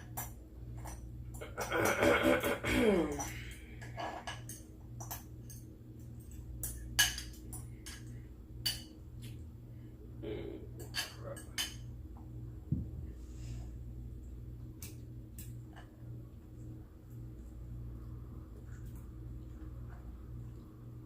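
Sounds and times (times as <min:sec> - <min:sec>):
steady low hum: 0:00.0 - 0:21.0
cutlery clinking on a plate: 0:03.1 - 0:08.1, 0:10.8 - 0:11.9
short low vocal sound: 0:10.2 - 0:10.7.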